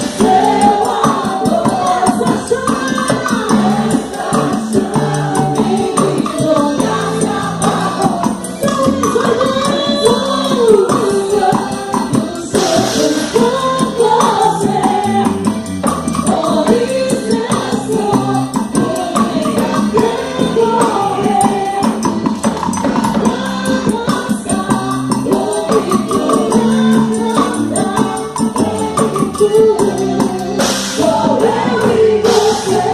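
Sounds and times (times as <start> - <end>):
group singing over a beat: 0.0 - 32.9
shaken percussion: 0.0 - 32.9.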